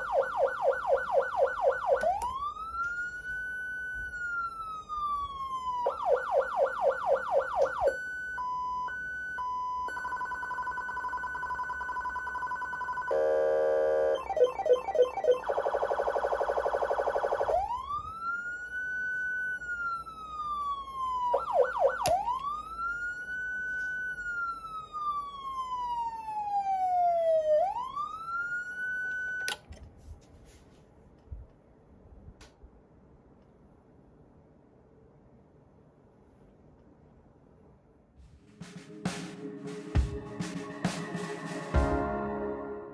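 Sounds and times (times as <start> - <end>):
electronic siren cycling tones: 0.0 - 29.5.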